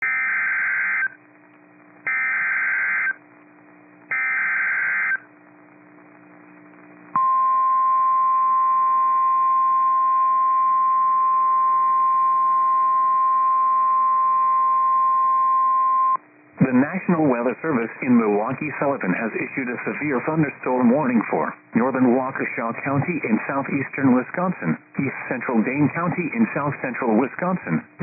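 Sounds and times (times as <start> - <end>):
steady warning alarm tone: 0.0 - 1.2, 2.1 - 3.2, 4.1 - 5.2.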